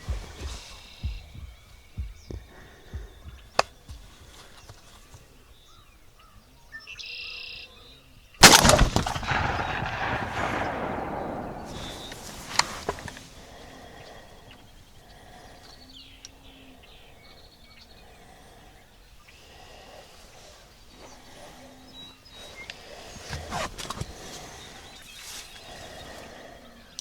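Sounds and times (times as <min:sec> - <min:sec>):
soft low thumps: 0:00.0 - 0:05.1, 0:08.4 - 0:13.2
shotgun blast with echo: 0:08.4 - 0:13.4.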